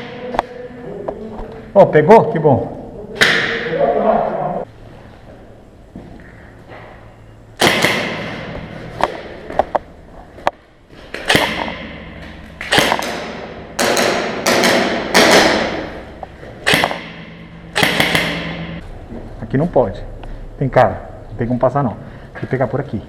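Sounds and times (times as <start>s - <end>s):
airsoft gun shots: 7.6s - 8.6s, 11.2s - 16.0s, 16.6s - 18.8s.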